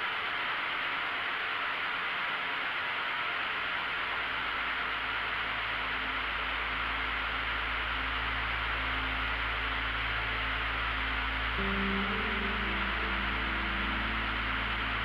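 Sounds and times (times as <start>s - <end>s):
low rumble: 5.0s - 15.0s.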